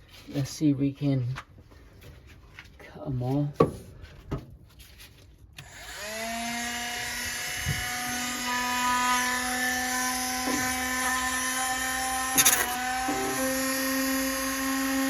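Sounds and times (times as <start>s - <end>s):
rotary tool high whine: 5.6s - 15.0s.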